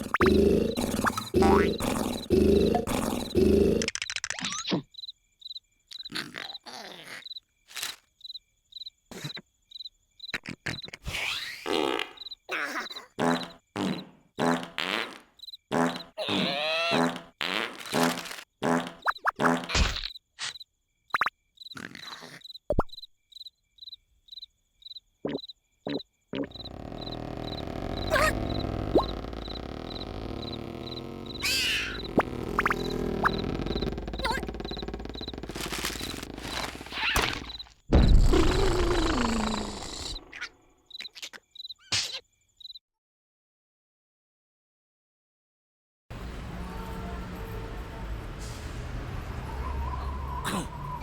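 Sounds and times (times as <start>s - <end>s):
cartoon snoring: 0.0s - 4.0s, 12.8s - 14.8s, 15.7s - 19.7s, 21.8s - 22.4s, 25.3s - 37.6s, 38.2s - 40.4s
crickets chirping: 0.0s - 11.0s, 11.7s - 14.3s, 15.3s - 16.5s, 19.0s - 42.8s
cartoon sound effects: 16.0s - 17.2s, 25.3s - 40.3s
cartoon character voice: 28.0s - 28.4s, 34.2s - 34.5s.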